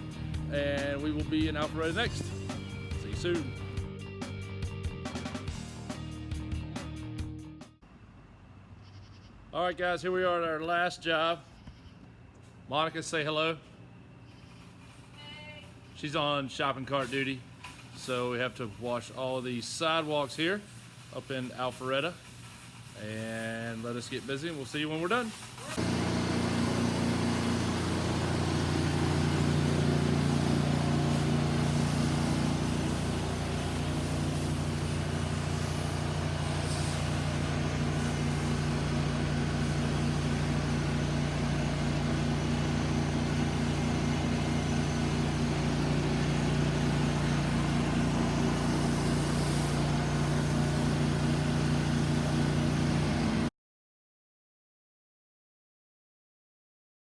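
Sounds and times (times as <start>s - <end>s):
water spray hissing: 17.8s - 53.4s
gas engine droning: 25.8s - 53.5s.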